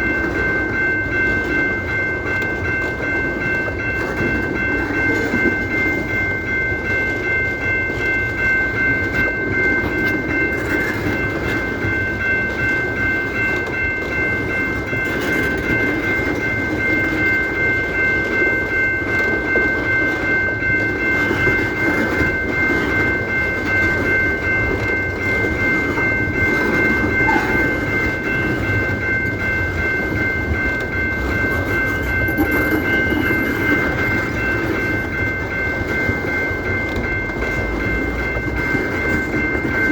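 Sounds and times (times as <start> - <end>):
train rumbling: 0.0 - 39.9
high ringing tone: 16.0 - 39.9.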